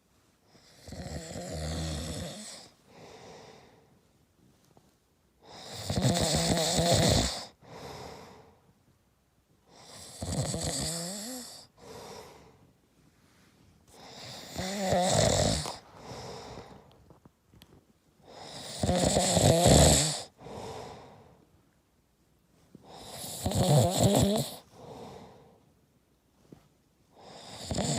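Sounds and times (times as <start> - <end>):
man snoring: 0.6 - 2.7, 5.4 - 8.3, 9.7 - 12.1, 14.0 - 16.8, 18.3 - 21.0, 22.9 - 25.3, 27.2 - 27.9
soft breath out: 2.6 - 4.1, 11.6 - 14.4, 15.6 - 17.2, 20.3 - 21.5, 24.6 - 25.7.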